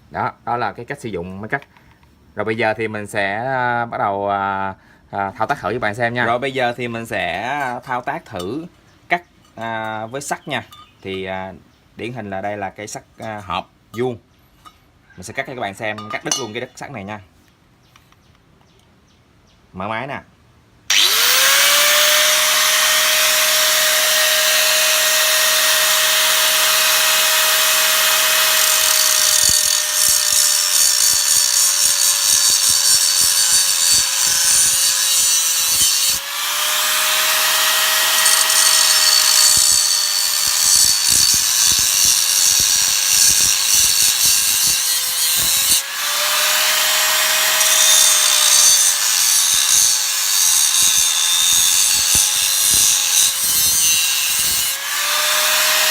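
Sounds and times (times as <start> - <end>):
angle grinder cutting steel: 20.9 - 55.9.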